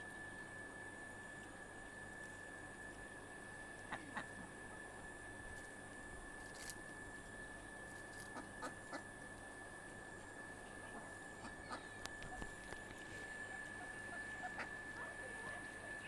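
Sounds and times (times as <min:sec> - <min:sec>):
ducks quacking faintly: 0:13.2 - 0:16.0.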